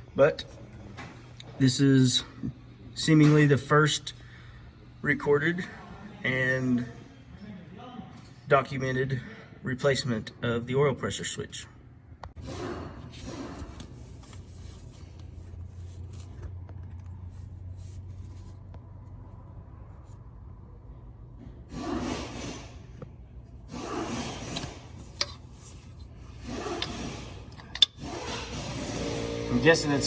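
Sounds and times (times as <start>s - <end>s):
hands rubbing on engine parts: 13.2s - 20.3s, 24.5s - 27.3s.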